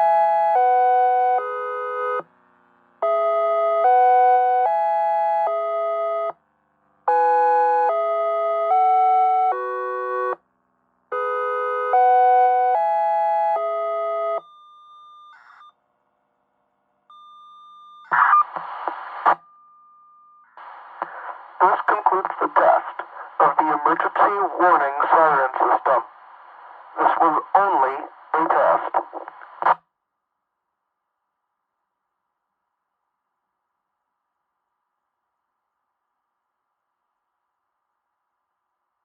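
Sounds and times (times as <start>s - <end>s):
faint steady tone: 11.1s - 23.9s
radio noise burst: 18.1s - 19.4s, 20.6s - 29.8s
dual-tone siren chime: 19.4s - 20.6s.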